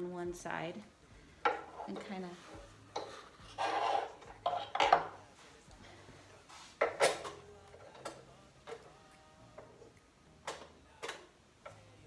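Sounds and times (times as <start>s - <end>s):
metal tool scraping inside metal: 1.6s - 5.0s.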